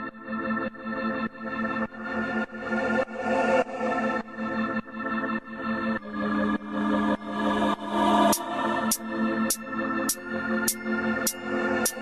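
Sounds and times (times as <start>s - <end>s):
sustained synth chords: 4.6s - 12.0s.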